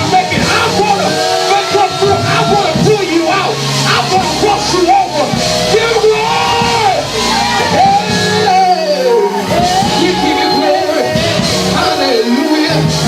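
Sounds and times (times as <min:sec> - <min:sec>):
band playing gospel music: 0:00.0 - 0:13.0
person singing and shouting: 0:00.0 - 0:13.0.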